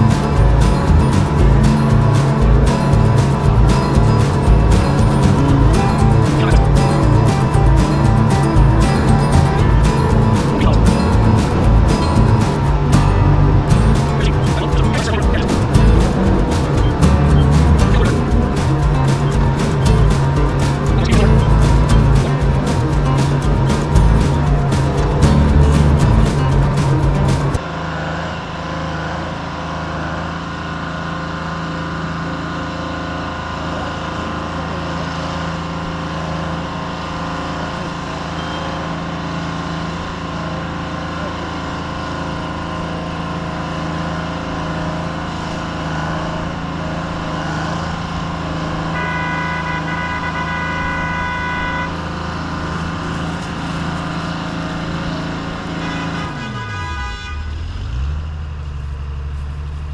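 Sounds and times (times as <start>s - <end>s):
high steady whine: 0.0s - 27.6s, 39.9s - 56.0s
diesel engine running: 0.0s - 56.6s, 57.5s - 59.9s.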